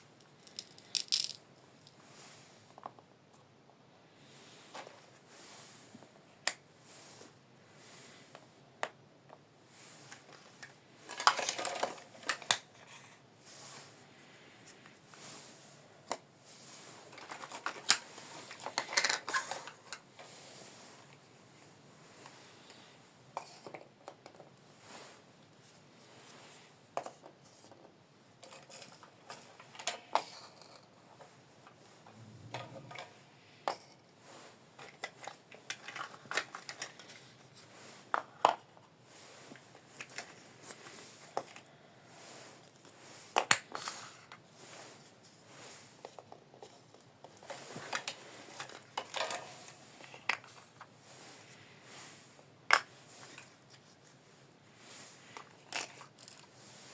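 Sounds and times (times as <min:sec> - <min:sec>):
plastic toy pieces knocking: 0:00.2 - 0:01.9, 0:11.1 - 0:12.6, 0:18.6 - 0:20.0.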